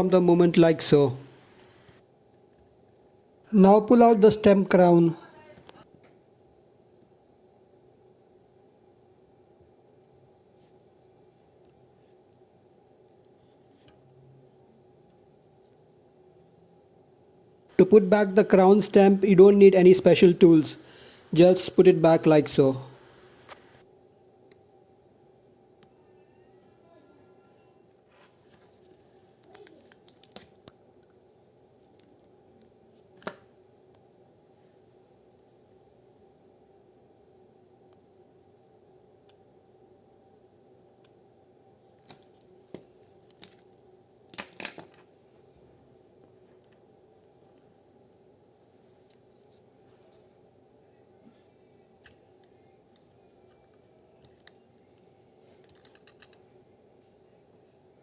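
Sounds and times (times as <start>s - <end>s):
faint steady hum: 0.0s - 58.0s
small metallic clicks: 52.0s - 56.4s.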